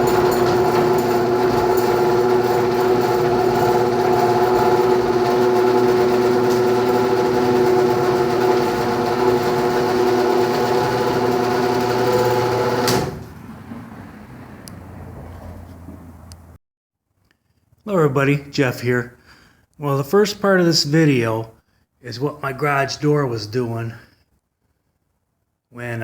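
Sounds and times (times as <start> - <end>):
garage door opener motor humming: 0.0 - 15.1.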